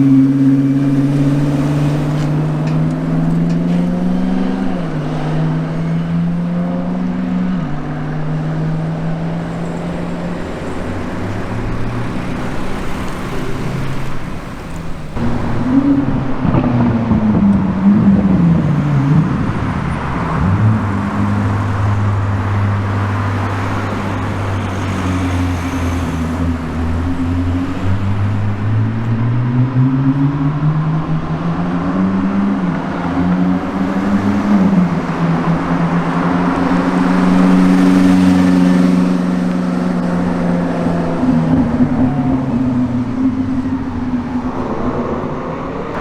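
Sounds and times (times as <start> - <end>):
car engine running: 0.0 - 28.2.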